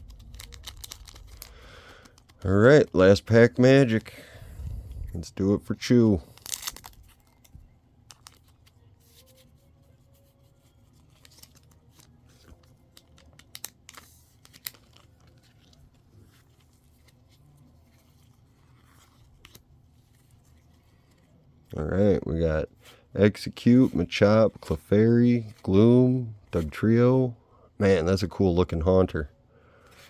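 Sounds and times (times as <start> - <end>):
foil wrapper tearing and crinkling: 0.0 - 2.5, 6.3 - 8.8, 10.9 - 16.2
cards rustling in hands: 0.0 - 27.2, 29.7 - 30.0.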